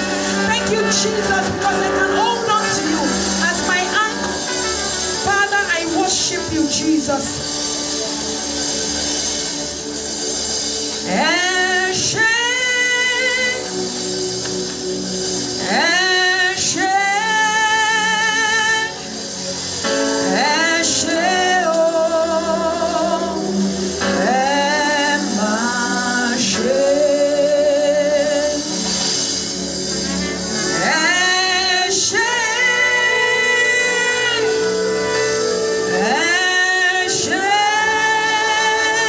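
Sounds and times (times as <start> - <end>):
sustained instrumental backing: 0.0 - 39.0
voices singing with vibrato: 0.0 - 39.0.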